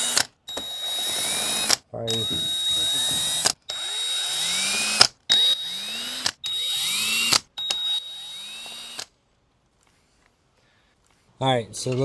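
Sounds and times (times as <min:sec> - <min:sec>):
cordless drill whining: 0:00.0 - 0:09.1.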